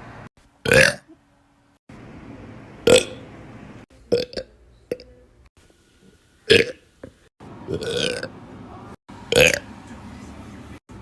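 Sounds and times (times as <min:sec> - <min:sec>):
woman burping: 0:00.6 - 0:01.2.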